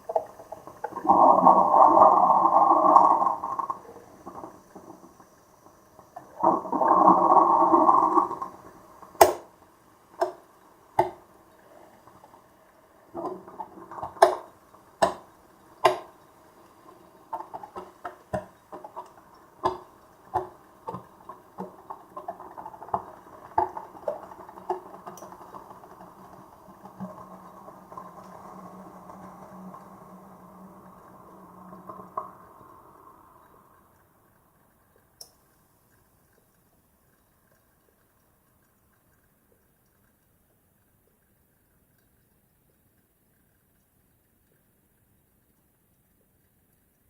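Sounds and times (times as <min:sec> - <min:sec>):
coffee maker gurgling and hissing: 0:00.0 - 0:47.0
coffee maker pops and sputters: 0:09.2 - 0:09.5.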